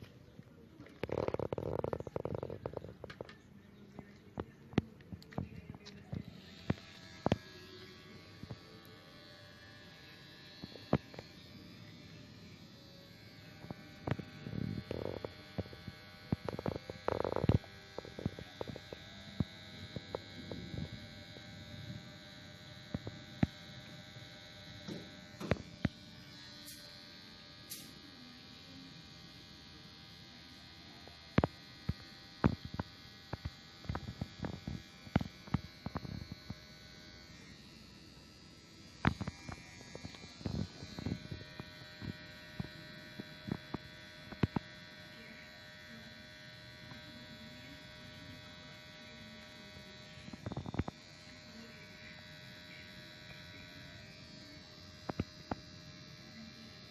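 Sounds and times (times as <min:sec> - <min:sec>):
clicks and crackles: 0:00.0 - 0:07.5, 0:14.8 - 0:20.2
electric hair clipper humming: 0:00.0 - 0:56.9.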